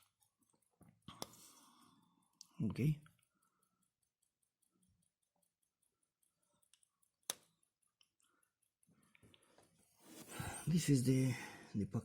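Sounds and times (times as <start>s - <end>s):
pocket watch ticking: 0.0s - 11.3s.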